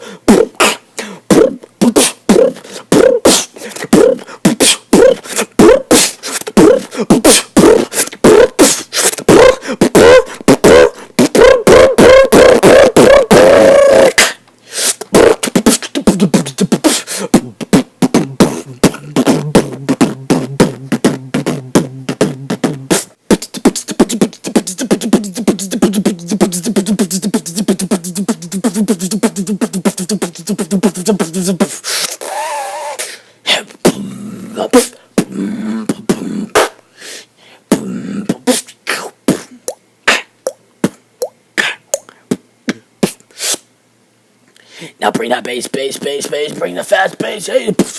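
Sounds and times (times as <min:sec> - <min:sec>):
person beatboxing: 0:00.0 - 0:43.7, 0:44.8 - 0:47.9
hummed bass line: 0:17.4 - 0:23.0.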